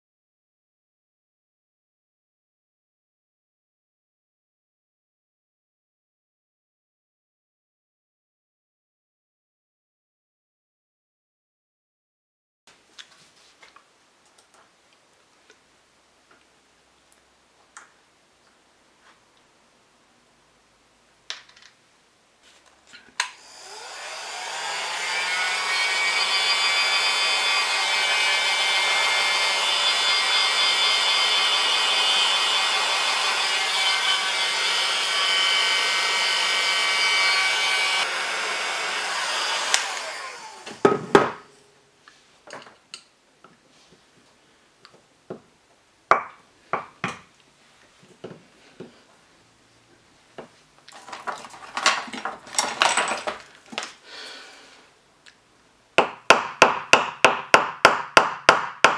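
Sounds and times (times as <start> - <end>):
electric power tool whining: 23.2 - 40.9.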